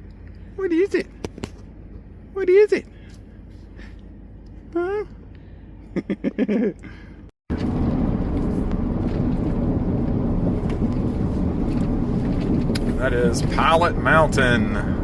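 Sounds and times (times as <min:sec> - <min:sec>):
vehicle road noise: 0:00.0 - 0:15.0
person saying huh: 0:04.7 - 0:05.2.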